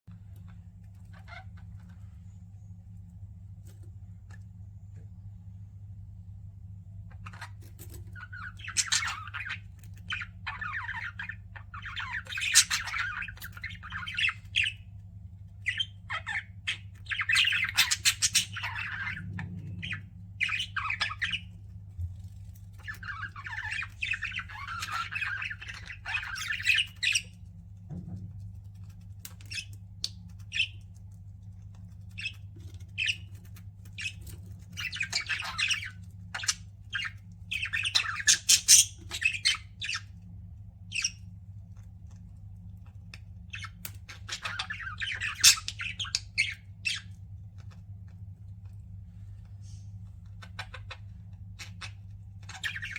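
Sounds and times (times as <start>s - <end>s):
steady low hum: 0.1s - 52.9s
budgerigars chattering and chirping: 0.4s - 2.1s, 7.1s - 21.6s, 22.7s - 27.4s, 28.9s - 31.0s, 31.7s - 41.4s, 42.9s - 47.8s, 49.6s - 52.9s.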